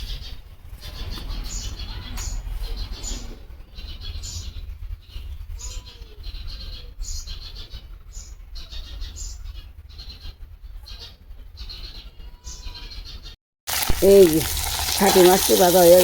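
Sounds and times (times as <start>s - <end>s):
steady low rumble: 0.0s - 8.6s
faint bird calls: 0.0s - 13.4s
fish frying in hot oil: 13.7s - 16.0s.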